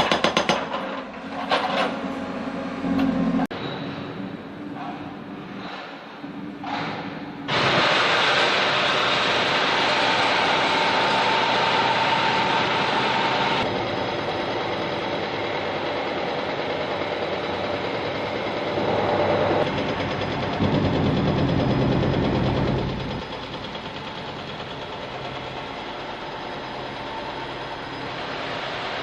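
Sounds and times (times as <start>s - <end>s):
backhoe diesel engine running: 10.2s - 29.0s.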